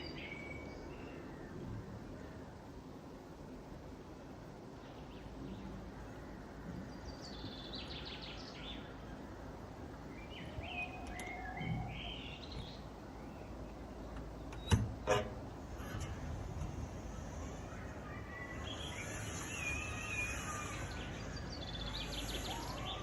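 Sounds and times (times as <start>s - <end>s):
outdoor background noise: 0.0s - 23.0s
birds chirping: 4.8s - 23.0s.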